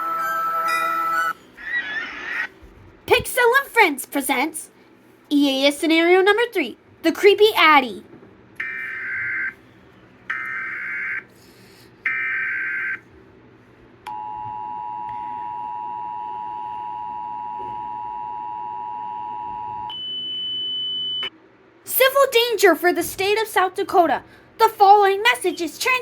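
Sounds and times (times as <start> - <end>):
two-tone attention signal: 0.0 - 1.4.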